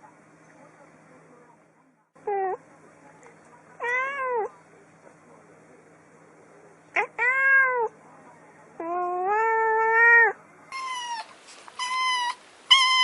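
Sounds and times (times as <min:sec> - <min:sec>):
cat meowing: 0:03.8 - 0:04.5, 0:07.0 - 0:07.9, 0:08.8 - 0:13.0.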